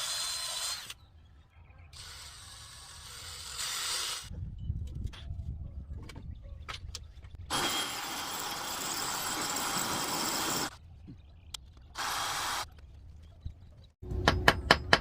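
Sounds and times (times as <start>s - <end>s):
power drill boring into concrete: 7.5s - 10.7s.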